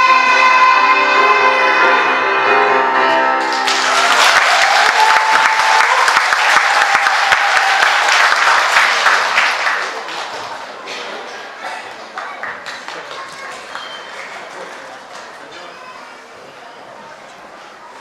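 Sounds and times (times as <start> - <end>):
choir singing held chord: 0.0 - 3.7
audience applause: 3.4 - 10.8, 11.8 - 15.5.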